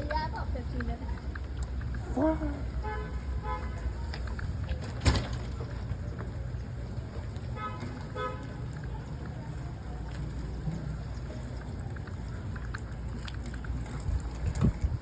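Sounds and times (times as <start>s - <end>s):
low outdoor rumble: 0.0s - 15.0s
car horn beeps: 2.8s - 3.9s, 7.6s - 8.6s.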